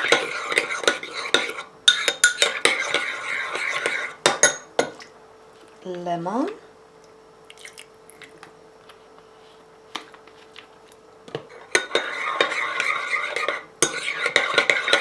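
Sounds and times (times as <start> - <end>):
utensil scraping a bowl: 0.0 - 4.5, 11.5 - 15.0.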